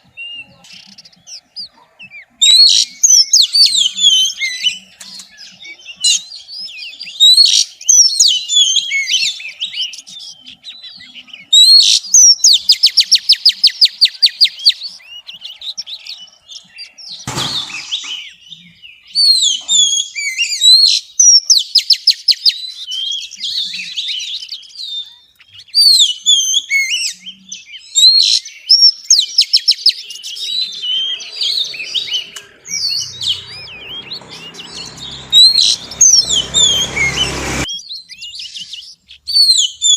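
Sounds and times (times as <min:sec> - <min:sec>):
bird singing whistled phrases: 0:00.0 - 0:17.2, 0:18.0 - 0:36.7, 0:37.7 - 0:39.9
noisy burst: 0:30.4 - 0:37.7.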